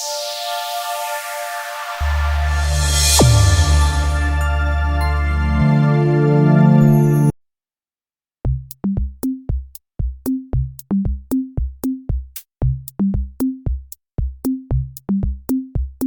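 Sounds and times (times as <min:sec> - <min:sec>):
electronic drum-machine beat: 0:02.0 - 0:05.0, 0:08.5 - 0:16.0.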